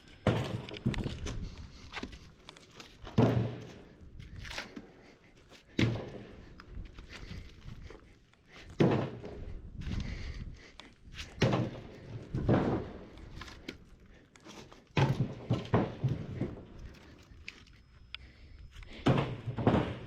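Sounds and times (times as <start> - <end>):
firewood thudding down: 0.2 - 1.1, 3.0 - 3.8, 8.8 - 9.4, 11.3 - 13.7, 14.9 - 16.8, 19.0 - 20.0.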